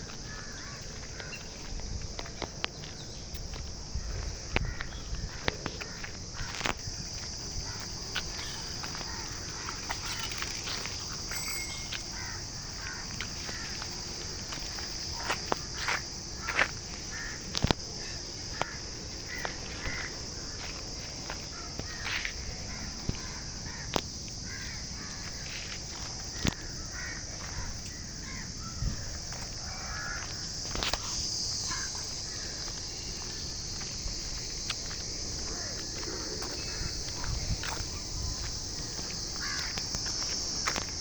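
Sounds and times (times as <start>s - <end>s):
high-pitched drone: 11.3s - 12.1s.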